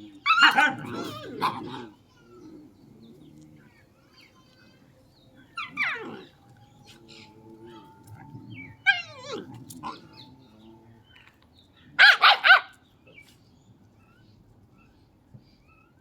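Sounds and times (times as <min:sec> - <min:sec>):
dog yelping: 0:00.2 - 0:01.9, 0:08.8 - 0:10.0, 0:12.0 - 0:12.7
dog barking: 0:00.3 - 0:01.9, 0:12.0 - 0:12.8.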